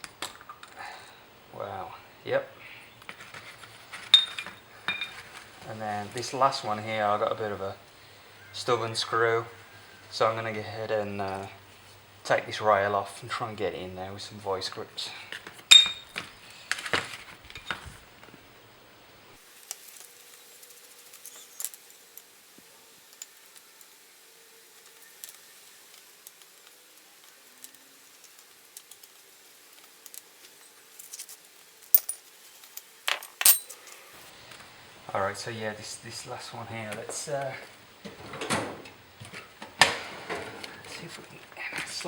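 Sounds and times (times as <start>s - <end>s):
metal tools clinking on workbench: 3.5s - 5.4s, 15.7s - 16.2s, 31.9s - 32.2s, 33.1s - 33.8s.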